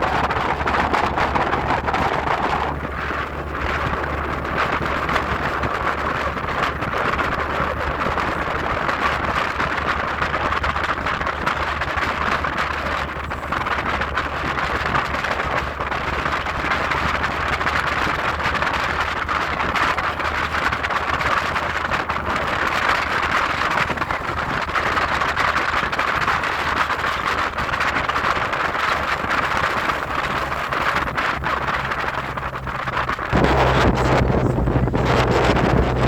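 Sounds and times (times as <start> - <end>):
low steady hum: 29.0 - 36.0.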